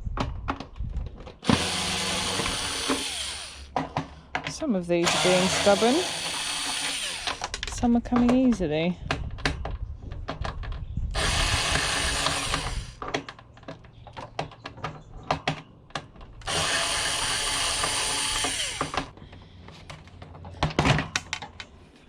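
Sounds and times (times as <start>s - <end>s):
power drill-driver running: 1.4s - 3.7s, 5.0s - 7.6s, 11.1s - 13.0s, 16.4s - 19.1s
clicks and knocks of handling parts: 18.8s - 22.0s.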